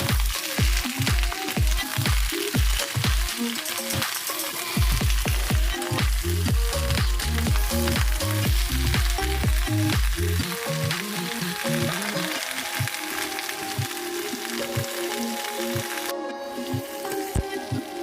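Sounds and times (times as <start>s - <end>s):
background music with bass beat: 0.0s - 18.0s
crackling hiss: 0.0s - 18.0s.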